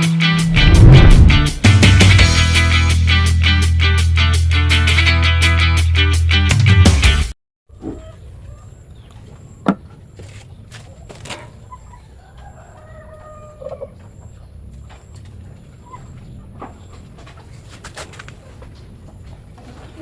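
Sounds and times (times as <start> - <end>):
steady low hum: 0.4 - 1.9.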